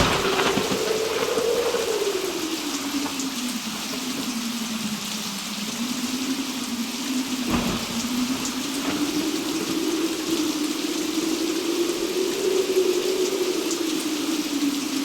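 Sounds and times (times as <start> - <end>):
steady rain: 0.0 - 15.0
wind with wavering tone: 0.0 - 15.0
low thunder thud: 7.2 - 10.7.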